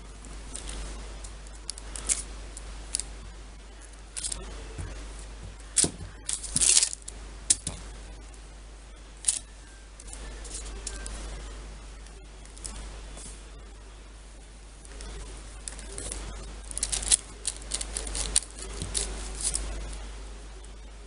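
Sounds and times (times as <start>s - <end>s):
plastic toys clicking and tapping: 3.9s - 4.4s, 5.6s - 7.8s, 9.2s - 9.4s, 15.6s - 19.7s.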